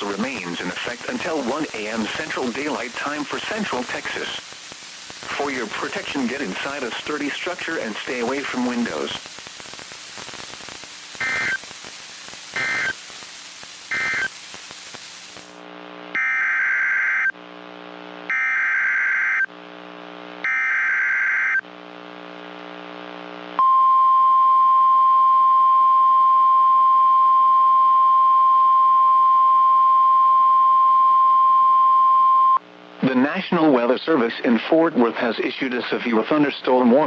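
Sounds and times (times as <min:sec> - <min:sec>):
radio static: 0:00.0 - 0:20.7, 0:21.3 - 0:23.6, 0:32.8 - 0:37.0
warbling data tone bursts: 0:11.2 - 0:11.6, 0:12.6 - 0:13.0, 0:13.9 - 0:14.4
steady warning alarm tone: 0:12.6 - 0:12.9, 0:13.9 - 0:14.3, 0:18.3 - 0:19.5, 0:20.4 - 0:21.6.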